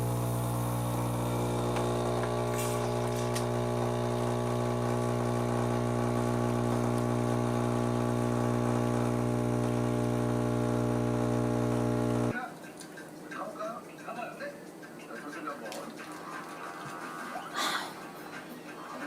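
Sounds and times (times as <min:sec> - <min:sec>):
small electric machine humming: 0:00.0 - 0:12.3.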